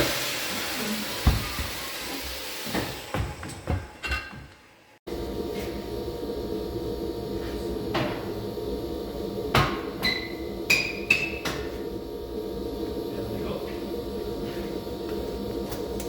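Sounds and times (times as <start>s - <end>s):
steady hum: 5.1s - 16.0s.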